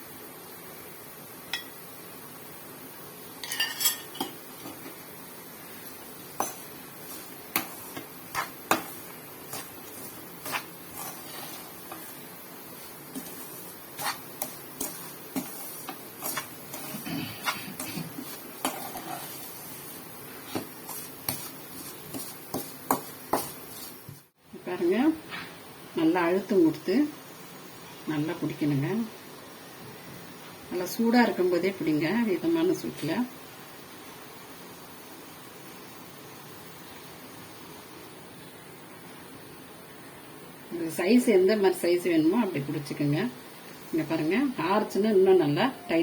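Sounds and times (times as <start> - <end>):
metal spoon scraping a pan: 3.4 - 4.9, 5.9 - 24.1.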